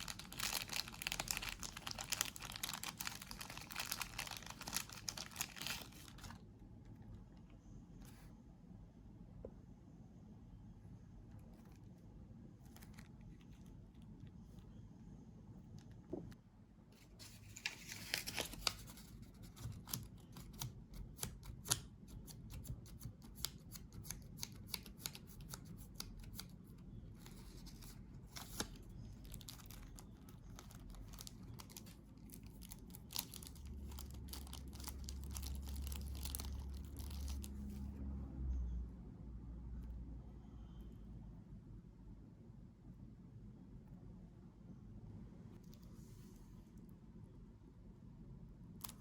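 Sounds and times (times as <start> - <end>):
packaging crackling and tearing: 0.0 - 6.4, 17.2 - 21.8, 27.3 - 37.6.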